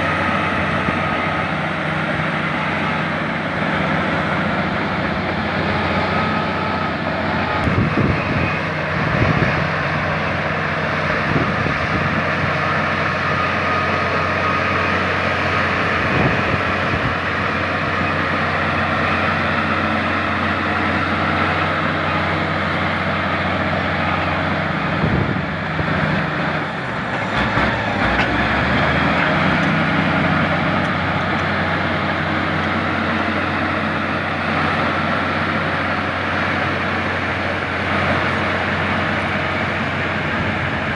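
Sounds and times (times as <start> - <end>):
bulldozer diesel engine running: 0.0 - 40.9.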